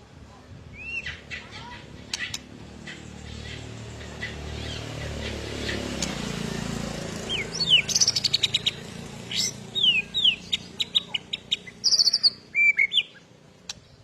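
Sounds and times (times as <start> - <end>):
bird singing whistles and trills: 0.7 - 1.5, 7.2 - 13.2.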